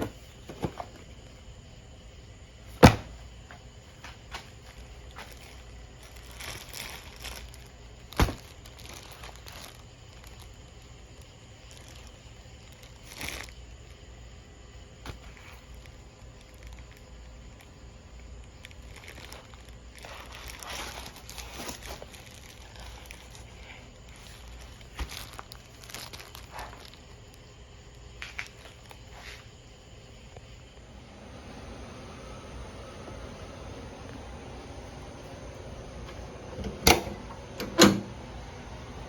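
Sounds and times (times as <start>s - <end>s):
material rustling and crinkling: 3.9s - 13.8s, 18.4s - 29.6s.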